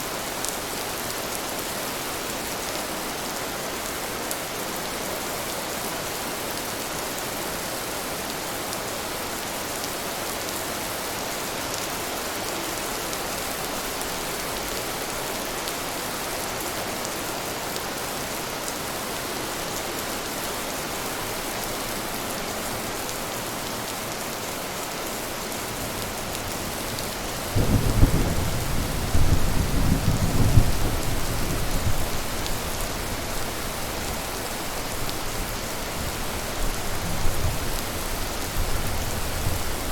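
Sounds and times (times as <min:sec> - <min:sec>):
steady rain falling: 0:00.0 - 0:39.9
thunder rumbling: 0:27.5 - 0:32.6.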